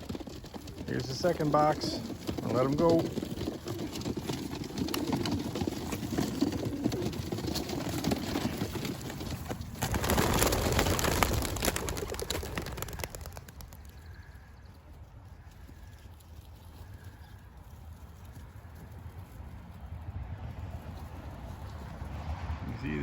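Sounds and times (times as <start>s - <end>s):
pigeon wings flapping: 0.0s - 14.1s.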